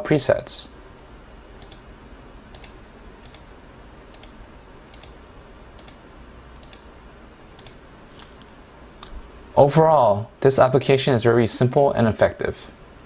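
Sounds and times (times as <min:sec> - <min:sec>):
computer mouse clicks: 0:01.6 - 0:01.9, 0:02.5 - 0:03.5, 0:04.1 - 0:05.2, 0:05.8 - 0:06.9, 0:07.6 - 0:08.4.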